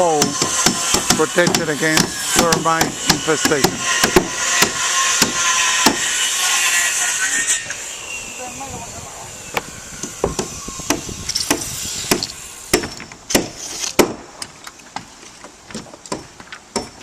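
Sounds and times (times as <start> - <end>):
knocks and bangs on wood: 0.2 - 6.0, 10.2 - 14.3.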